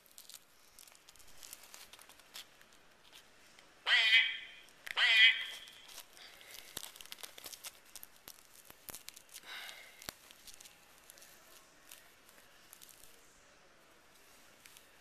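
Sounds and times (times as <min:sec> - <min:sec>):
plush toy handling: 0:00.0 - 0:03.7, 0:04.7 - 0:13.2
velcro tearing: 0:05.5 - 0:13.2.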